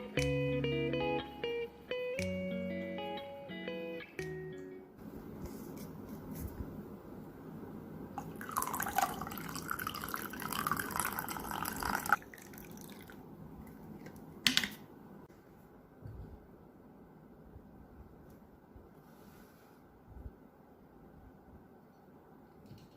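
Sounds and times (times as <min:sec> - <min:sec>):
water trickling: 0:08.2 - 0:13.8.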